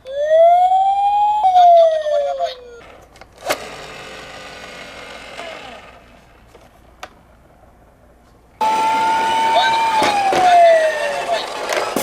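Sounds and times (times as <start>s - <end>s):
electronic toy siren: 0.0s - 2.9s, 8.6s - 12.0s
toy car whirring: 2.1s - 6.6s, 8.6s - 12.0s.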